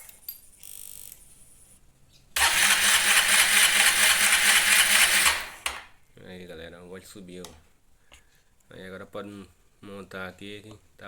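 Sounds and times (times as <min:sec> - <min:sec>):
engine cranking on starter: 0:02.4 - 0:05.9.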